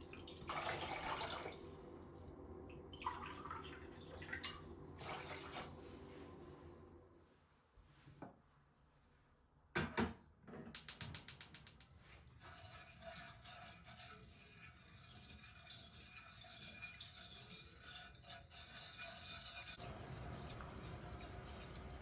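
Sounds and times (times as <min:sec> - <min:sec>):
ratchet-like clicks: 0:10.8 - 0:12.0.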